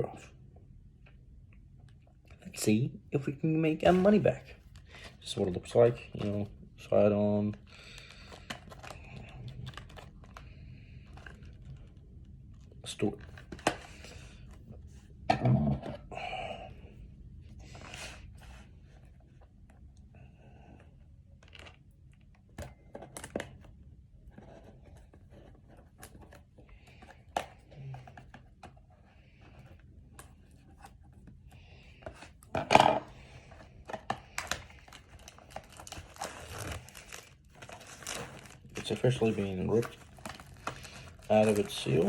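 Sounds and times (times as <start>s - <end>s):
plastic shrink-wrap tearing: 33.8s - 42.0s.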